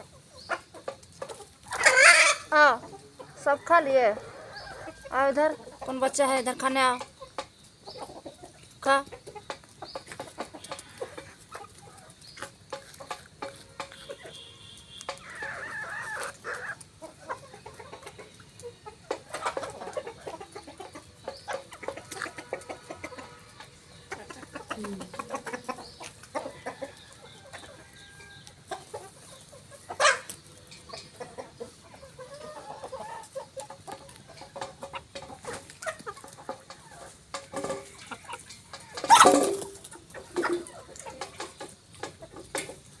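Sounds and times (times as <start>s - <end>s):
chickens clucking: 0.0s - 43.0s
chicken loud call: 1.7s - 2.6s, 14.1s - 16.8s.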